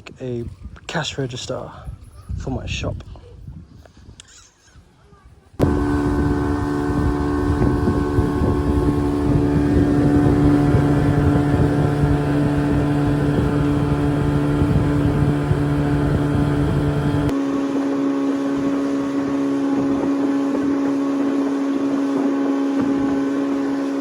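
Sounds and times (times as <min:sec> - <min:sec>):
low rumble: 0:05.6 - 0:17.4
engine droning hum: 0:05.6 - 0:24.0.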